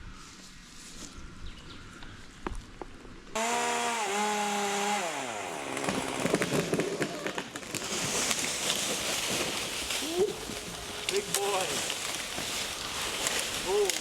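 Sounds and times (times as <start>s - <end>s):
chainsaw cutting wood: 3.4s - 9.8s
wood cracking and snapping: 5.6s - 14.0s.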